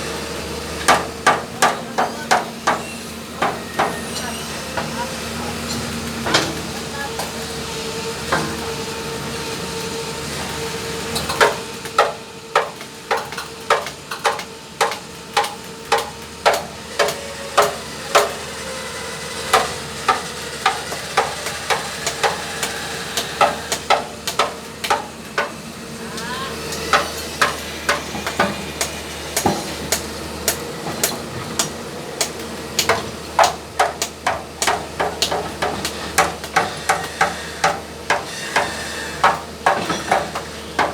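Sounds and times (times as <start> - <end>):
hammer striking: 11.4 - 18.4, 19.5 - 25.6, 26.9 - 40.9.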